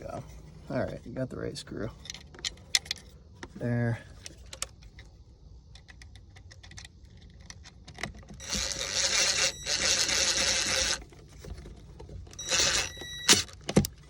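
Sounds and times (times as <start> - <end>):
small parts clicking: 5.7 - 11.1, 12.3 - 14.0
electric screwdriver whirring: 8.4 - 11.0, 12.4 - 13.5.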